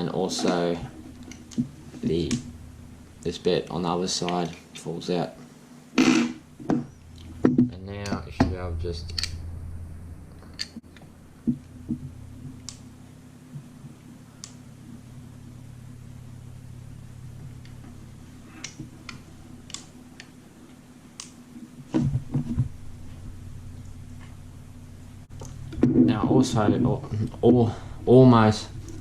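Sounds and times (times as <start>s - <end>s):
low hum: 0.0s - 29.0s.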